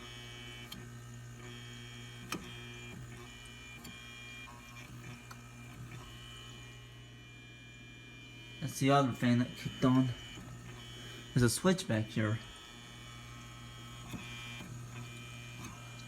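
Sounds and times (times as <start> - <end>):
refrigerator fan motor hum: 0.0 - 16.0
click: 0.7 - 0.9.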